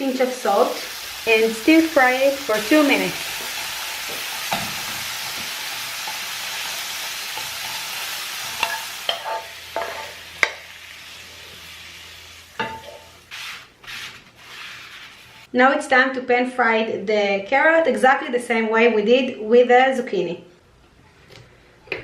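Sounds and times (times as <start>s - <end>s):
vegetables sizzling in oil: 0.0s - 15.5s.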